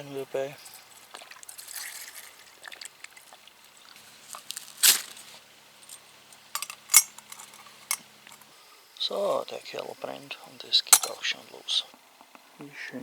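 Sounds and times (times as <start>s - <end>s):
faint steady hum: 0.0s - 13.0s
sharp igniter strikes: 4.4s - 8.4s
metallic clicks and knocks: 6.6s - 8.4s, 11.0s - 11.2s.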